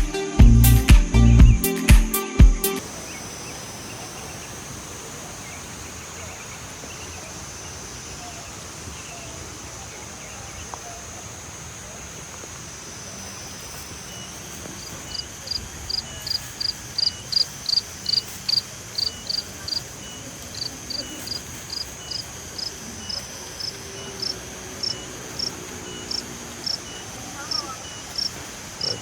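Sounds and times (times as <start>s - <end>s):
high-pitched insect drone: 2.8s - 8.8s, 12.1s - 29.0s
cricket chirping: 2.8s - 29.0s.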